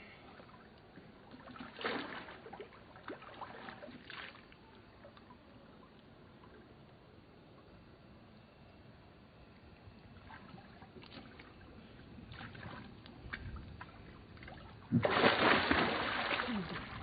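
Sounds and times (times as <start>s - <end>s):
water splashing and sloshing: 0.4s - 6.8s, 10.1s - 17.0s.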